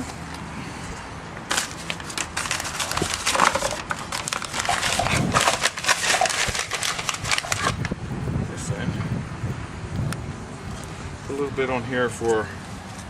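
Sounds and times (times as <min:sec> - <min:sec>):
plastic packet crinkling: 0:01.5 - 0:07.9.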